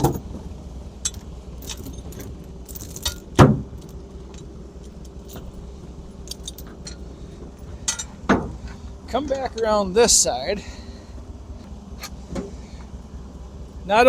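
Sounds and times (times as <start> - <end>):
chain clank: 0.0 - 9.9
steel chain clinking and rattling: 0.0 - 10.0.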